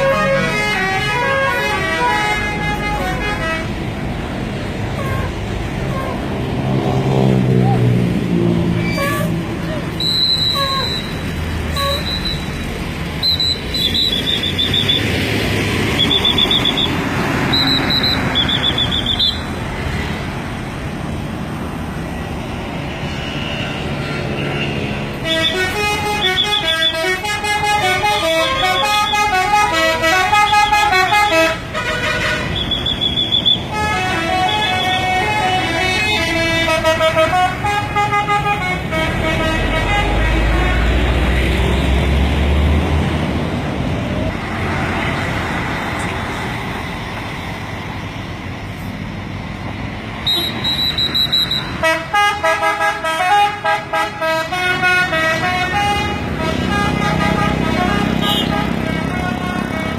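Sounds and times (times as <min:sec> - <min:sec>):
musical bus horns melody: 0:00.0 - 0:04.0, 0:04.9 - 0:06.5, 0:08.6 - 0:15.2, 0:15.9 - 0:19.6, 0:24.1 - 0:41.3, 0:50.2 - 0:59.9
engine noise: 0:00.0 - 0:59.9.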